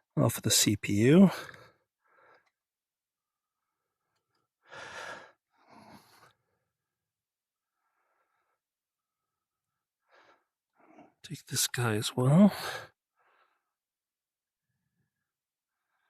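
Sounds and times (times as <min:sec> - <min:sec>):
person breathing: 0:04.6 - 0:06.5, 0:12.6 - 0:13.8.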